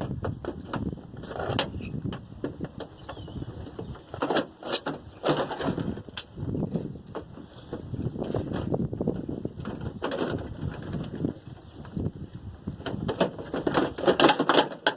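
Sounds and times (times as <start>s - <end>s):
metal latch clicks and scraping: 0.0s - 6.4s, 12.9s - 14.9s.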